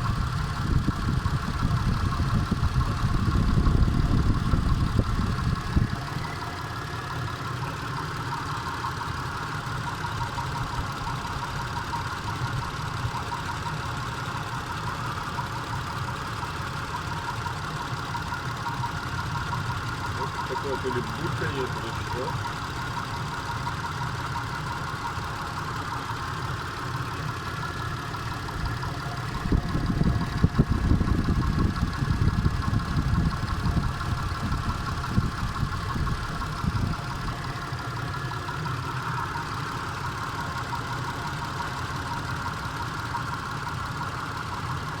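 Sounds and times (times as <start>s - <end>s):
car engine idling with knocks: 0.0s - 45.0s.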